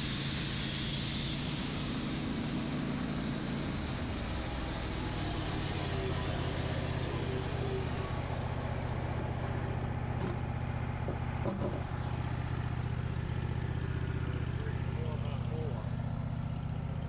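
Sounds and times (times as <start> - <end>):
hiss: 0.0 - 10.0
sawmill engine running: 0.0 - 17.0.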